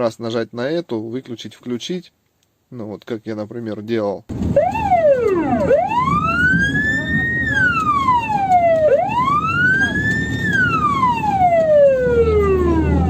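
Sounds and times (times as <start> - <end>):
ambulance siren wailing: 4.5 - 13.0.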